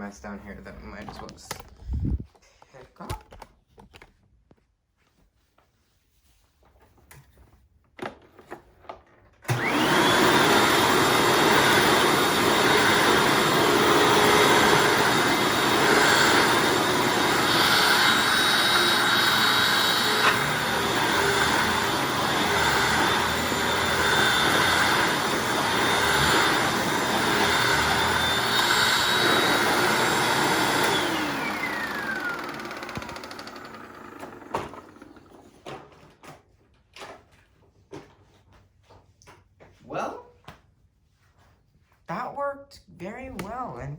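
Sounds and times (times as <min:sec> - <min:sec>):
vacuum cleaner motor whine: 0:09.5 - 0:35.6.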